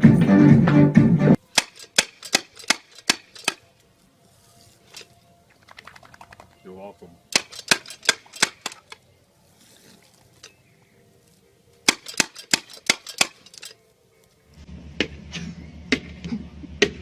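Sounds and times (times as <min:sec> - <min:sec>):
sharp cracks: 0:01.4 - 0:03.8, 0:04.9 - 0:09.0, 0:11.8 - 0:13.8.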